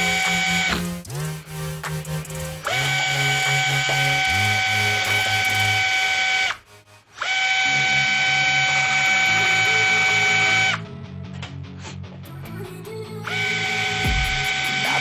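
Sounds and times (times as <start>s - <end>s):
music with bass beat: 0.0s - 6.8s, 14.0s - 15.0s.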